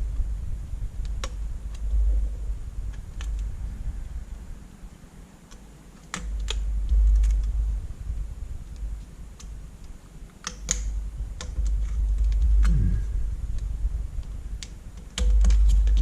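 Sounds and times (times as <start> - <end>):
low handling rumble: 0.0 - 4.6, 6.6 - 9.8, 10.9 - 16.0
sharp clicks and taps: 14.6 - 16.0.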